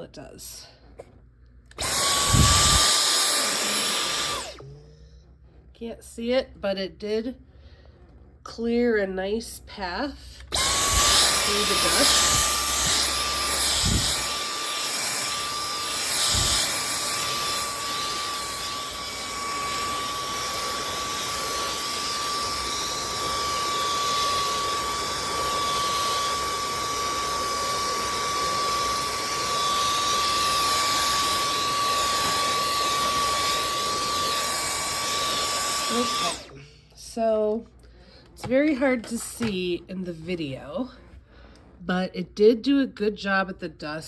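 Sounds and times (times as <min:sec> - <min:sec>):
cordless vacuum running: 0:01.7 - 0:04.8, 0:10.4 - 0:37.6.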